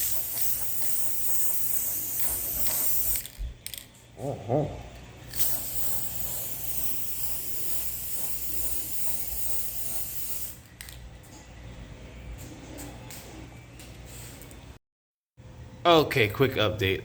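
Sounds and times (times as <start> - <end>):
spray paint can hissing: 0.0 - 3.5, 5.3 - 10.9.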